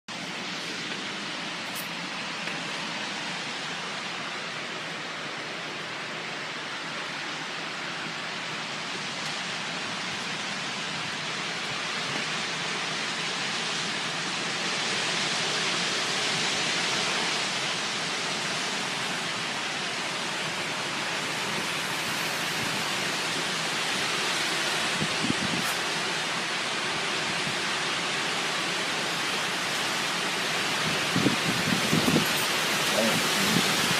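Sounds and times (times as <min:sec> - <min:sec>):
storm wind blowing hard: 0:20.1 - 0:26.3, 0:28.6 - 0:33.9.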